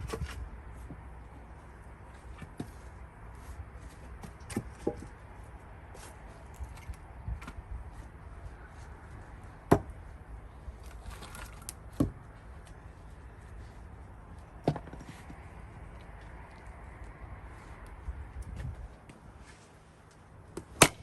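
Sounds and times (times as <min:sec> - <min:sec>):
axe chopping wood: 0:09.7 - 0:09.9, 0:20.6 - 0:21.0.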